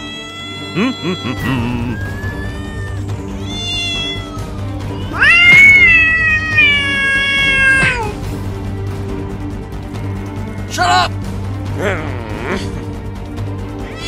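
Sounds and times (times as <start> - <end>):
cat meowing: 0.0 - 8.2.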